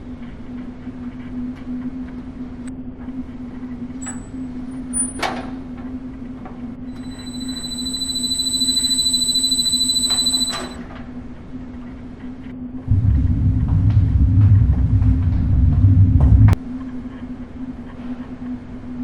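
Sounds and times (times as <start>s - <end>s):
high-pitched whine: 6.9s - 10.8s
low hum: 6.9s - 10.8s, 12.6s - 16.6s.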